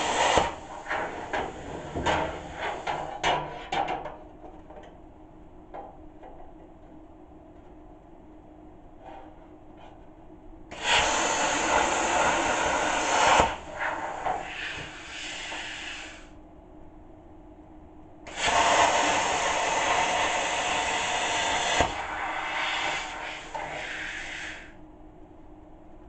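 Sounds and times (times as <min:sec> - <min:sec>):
plasma cutter hissing: 0:00.0 - 0:01.3, 0:10.8 - 0:16.3, 0:18.3 - 0:24.7.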